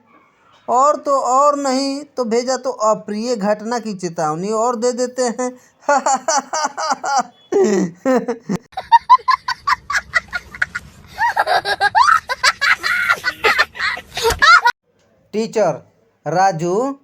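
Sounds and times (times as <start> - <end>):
person laughing: 5.8 - 14.7.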